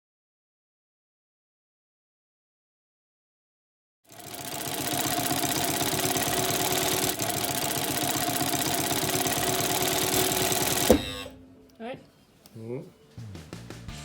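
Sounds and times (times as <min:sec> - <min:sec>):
motor-driven machine whining and clattering: 0:04.2 - 0:11.4.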